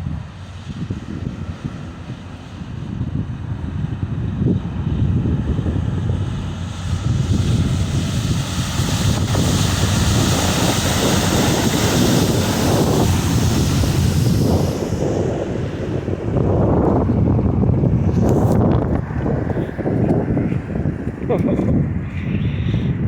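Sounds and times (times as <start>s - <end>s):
low road rumble: 0.0s - 23.0s
wind buffeting microphone: 0.0s - 23.0s
water spray rushing: 6.7s - 16.4s.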